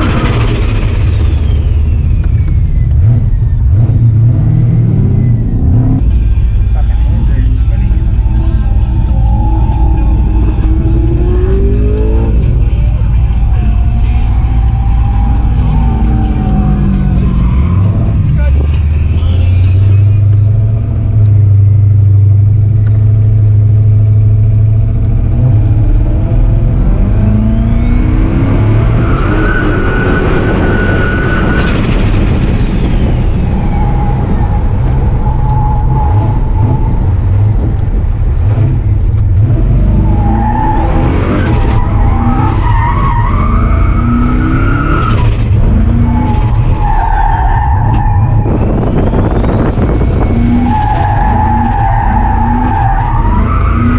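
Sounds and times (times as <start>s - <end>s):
truck engine revving: 0.0s - 53.9s
tyres squealing: 49.6s - 53.9s.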